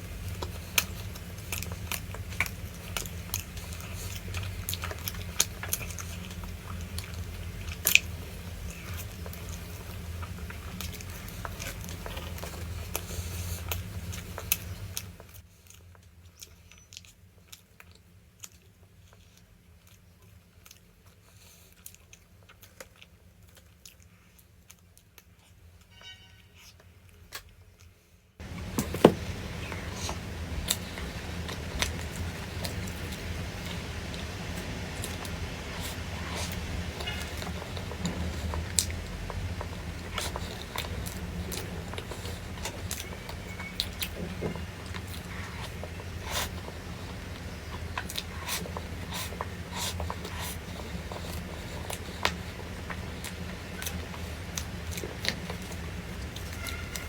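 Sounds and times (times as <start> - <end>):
person chewing crunchy food: 0.0 - 25.7, 26.6 - 57.0
low hum: 28.4 - 49.1.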